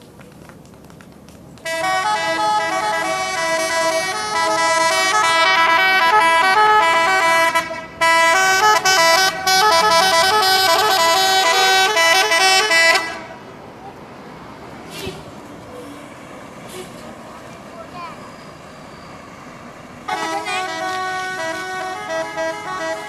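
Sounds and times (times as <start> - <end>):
musical air horn tune: 1.6 - 13.4, 20.1 - 23.0.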